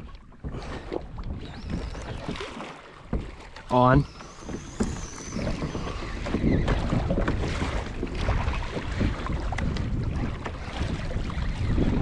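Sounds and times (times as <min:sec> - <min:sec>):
water slapping against kayak hull: 0:00.0 - 0:12.0
wind buffeting microphone: 0:00.0 - 0:12.0
small irregular knocks: 0:03.0 - 0:06.5.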